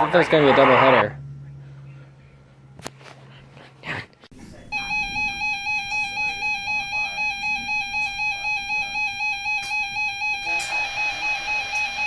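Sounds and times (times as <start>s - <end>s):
pulsing electronic alert tone: 4.7s - 12.0s.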